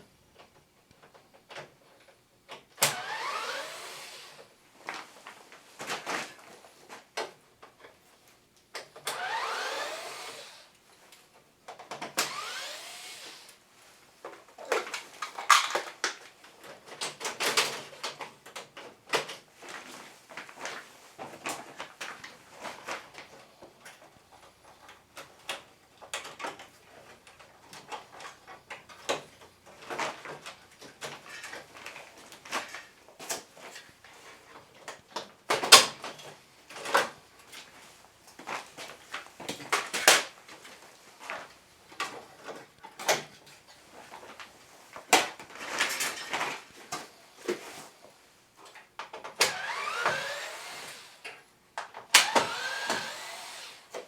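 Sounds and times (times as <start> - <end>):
plastic parts clicking and knocking: 0.4 - 3.0, 14.2 - 37.7, 38.3 - 47.6.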